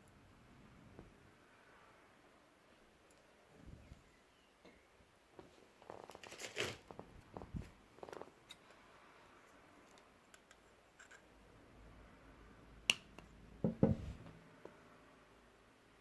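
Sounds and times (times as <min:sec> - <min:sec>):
soft knocks: 0:13.6 - 0:14.3.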